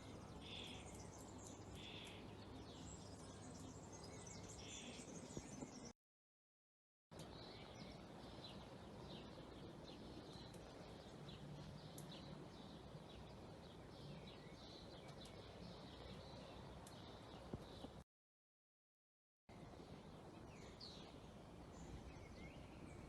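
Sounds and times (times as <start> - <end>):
faint bird chirps: 0.0 - 5.9.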